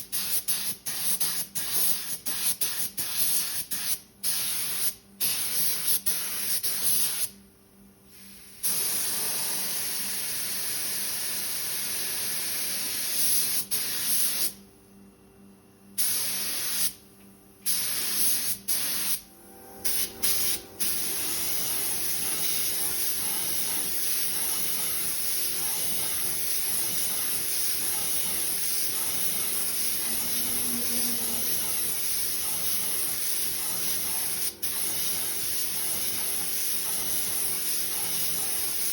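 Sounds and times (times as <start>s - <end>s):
paint spray gun hissing: 0.0s - 7.3s, 16.0s - 17.0s, 17.7s - 19.2s, 19.8s - 38.9s.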